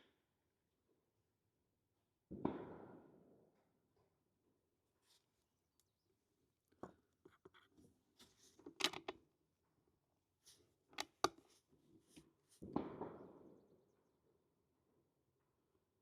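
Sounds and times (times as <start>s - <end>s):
handling clicks and knocks: 8.4s - 9.2s, 11.0s - 11.5s.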